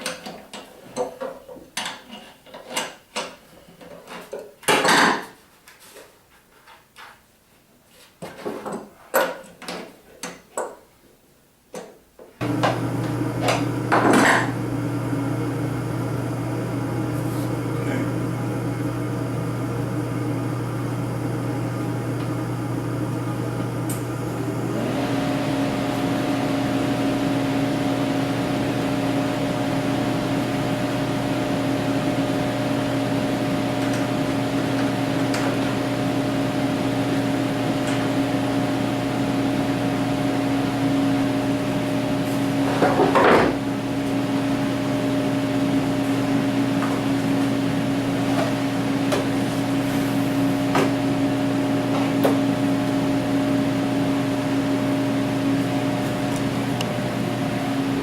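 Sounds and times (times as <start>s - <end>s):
machine humming: 12.4s - 42.2s, 43.8s - 58.0s.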